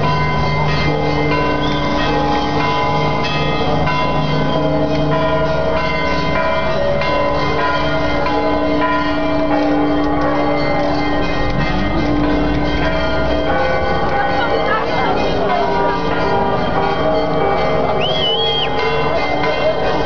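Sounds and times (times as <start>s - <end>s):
music with bell-like tones: 0.0s - 9.7s.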